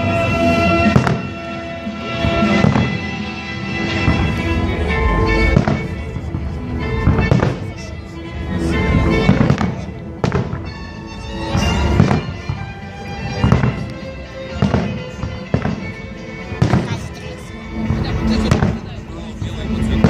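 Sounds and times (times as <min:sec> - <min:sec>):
fireworks bursting: 0:00.0 - 0:07.9, 0:08.8 - 0:20.0
music: 0:00.0 - 0:20.0.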